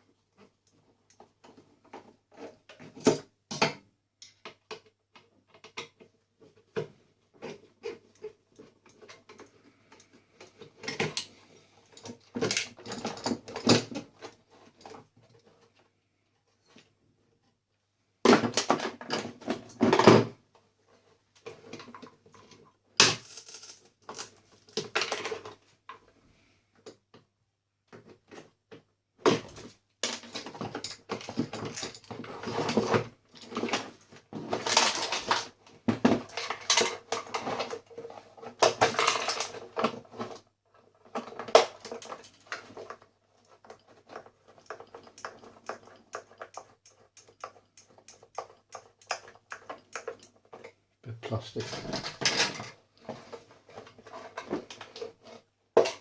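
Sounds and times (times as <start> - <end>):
coffee maker parts clattering: 51.6 - 52.8.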